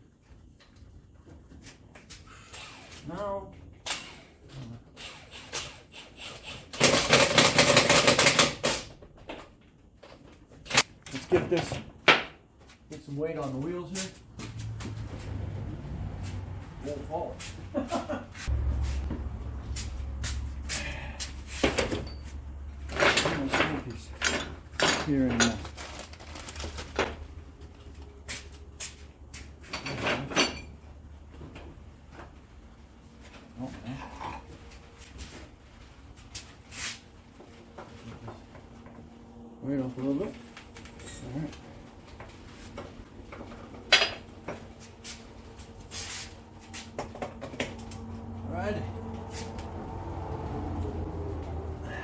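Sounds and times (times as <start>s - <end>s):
impact wrench rattling: 5.0s - 8.9s
sharp knocks and clatters: 5.6s - 12.6s
tools clanking: 20.7s - 25.8s.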